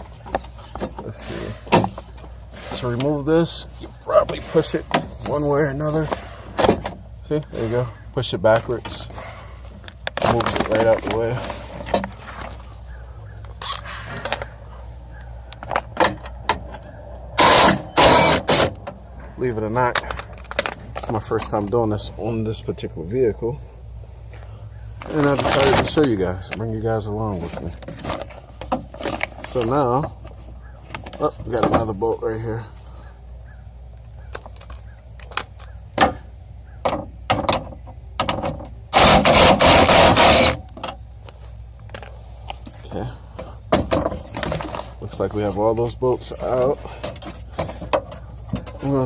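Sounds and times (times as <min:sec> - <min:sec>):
metal clicks and knocks: 0:36.8 - 0:38.8
cordless power tool running: 0:39.0 - 0:40.6.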